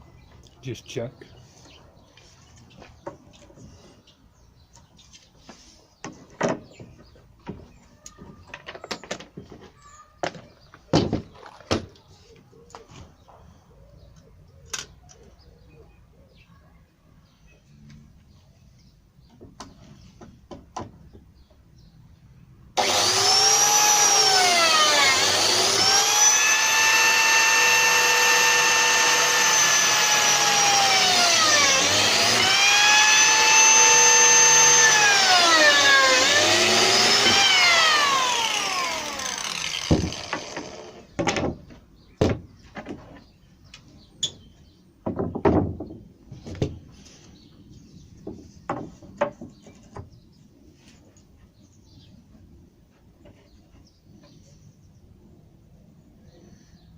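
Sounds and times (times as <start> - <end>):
track saw cutting plywood: 22.8 - 41.1.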